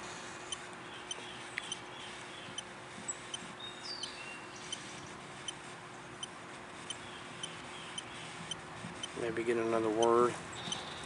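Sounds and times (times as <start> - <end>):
bird chirping: 0.8 - 5.1, 6.9 - 8.5, 10.5 - 11.0.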